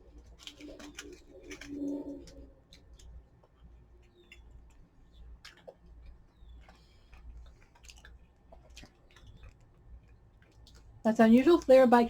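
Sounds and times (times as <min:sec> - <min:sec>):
low steady hum: 0:00.0 - 0:12.0
person chewing: 0:04.3 - 0:11.0.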